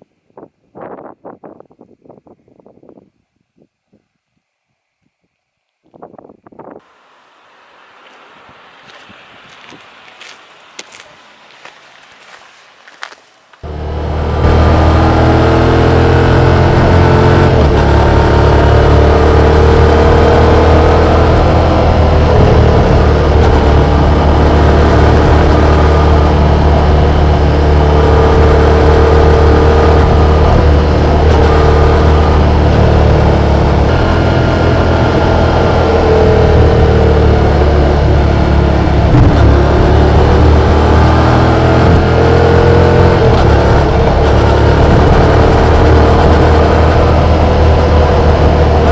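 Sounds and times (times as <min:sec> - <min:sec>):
motorcycle engine running: 0:13.6 - 0:48.9.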